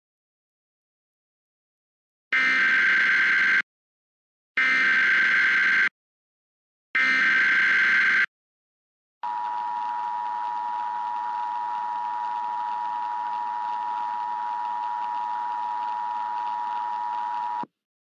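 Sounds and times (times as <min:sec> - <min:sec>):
two-tone alarm: 0:02.4 - 0:03.7, 0:04.6 - 0:05.9, 0:07.0 - 0:08.3.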